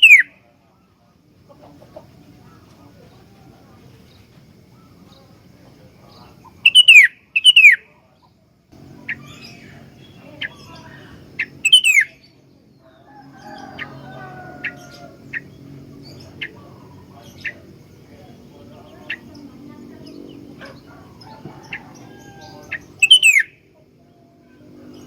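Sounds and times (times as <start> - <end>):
short sharp bird chirps: 6.4 - 7.8
bird whistling downward notes: 11.4 - 12.2, 21.2 - 23.5.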